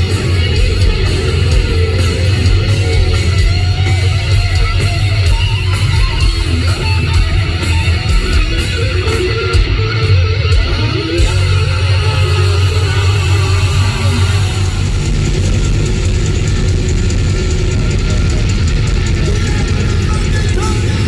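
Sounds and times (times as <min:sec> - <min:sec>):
bass guitar: 0:00.0 - 0:21.0
distorted electric guitar: 0:00.0 - 0:21.0
steady drum beat: 0:00.0 - 0:21.0.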